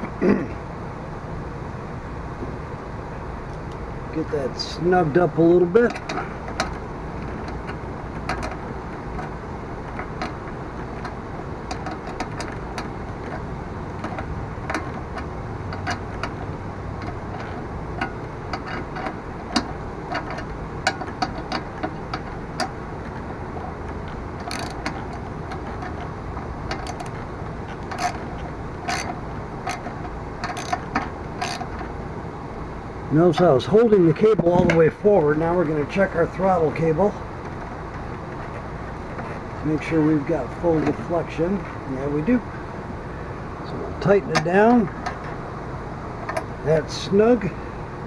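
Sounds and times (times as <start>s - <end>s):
low shop hum: 0.0s - 48.0s
hand tools clicking and ticking: 5.8s - 32.0s.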